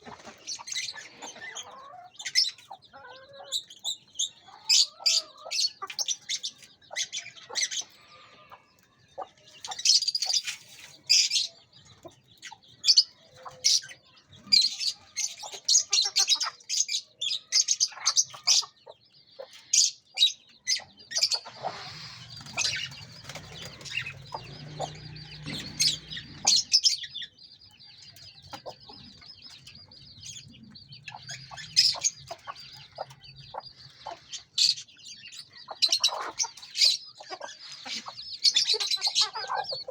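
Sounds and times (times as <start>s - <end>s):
birds chirping and clucking: 0.0s - 39.9s
wings flapping: 22.2s - 24.5s.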